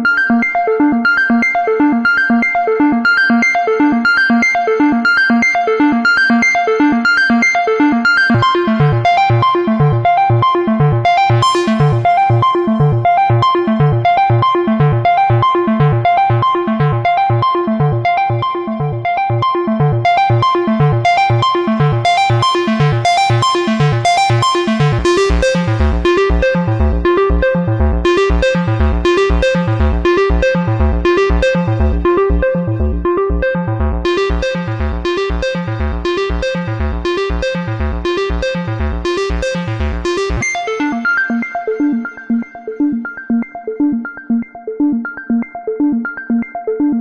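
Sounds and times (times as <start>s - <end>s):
pulsing synth bass line: 0.0s - 47.0s
synthesizer repeating notes: 0.0s - 47.0s.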